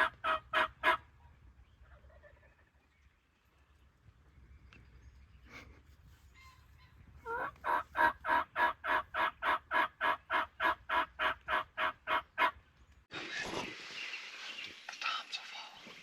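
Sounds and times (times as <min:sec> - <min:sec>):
turkey yelping: 0:00.0 - 0:01.0, 0:07.2 - 0:12.6.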